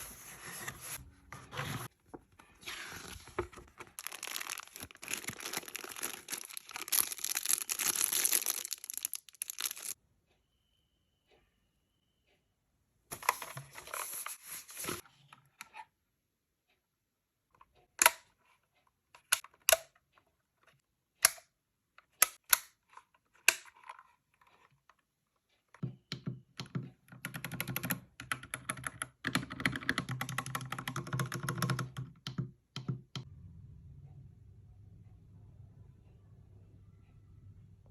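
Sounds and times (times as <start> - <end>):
mechanical keyboard typing: 26.1 - 33.2.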